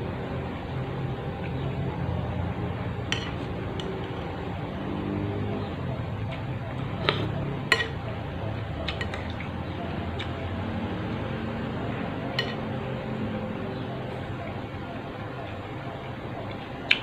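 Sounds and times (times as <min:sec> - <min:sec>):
low background hum: 0:00.0 - 0:17.0
cutlery clinking against bowl: 0:03.1 - 0:04.3, 0:07.1 - 0:08.0, 0:08.9 - 0:09.5, 0:12.3 - 0:12.8.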